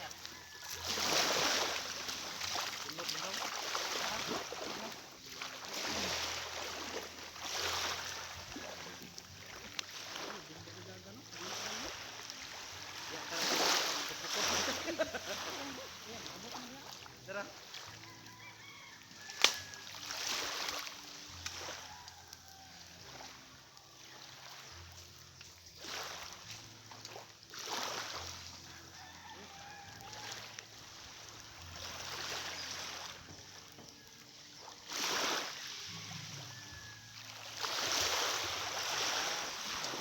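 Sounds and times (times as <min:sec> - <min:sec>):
rooster crowing faintly: 0:00.0 - 0:09.0, 0:17.7 - 0:24.8, 0:28.4 - 0:40.0
waves washing in: 0:00.0 - 0:17.5, 0:34.6 - 0:35.9, 0:37.3 - 0:40.0.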